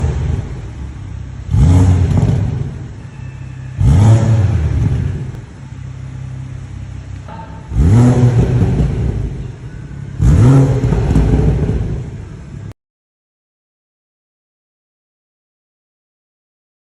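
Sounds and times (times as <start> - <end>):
car engine revving from idle: 0.0 - 12.7.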